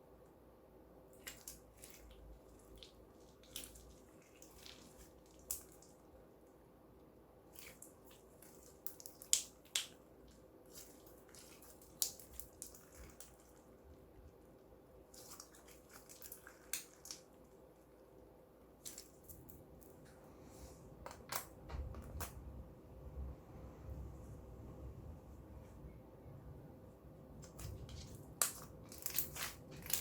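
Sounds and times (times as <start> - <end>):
slime squelching and popping: 1.1 - 6.1, 7.4 - 14.4, 15.0 - 17.4, 27.4 - 30.0.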